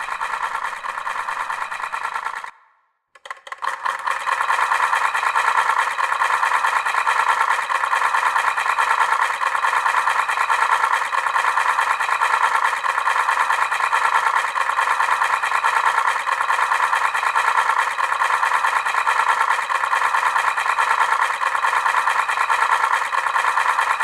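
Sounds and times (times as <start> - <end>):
alarm rattling buzz: 0.0 - 2.5.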